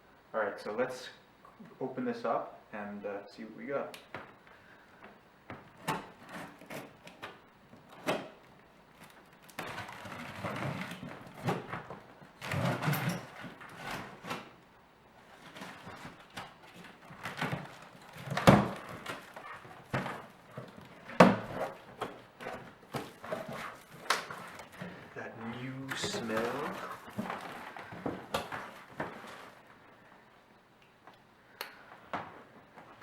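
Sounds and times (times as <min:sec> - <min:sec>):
cardboard box rustling and scraping: 0:15.3 - 0:25.1, 0:25.8 - 0:29.6.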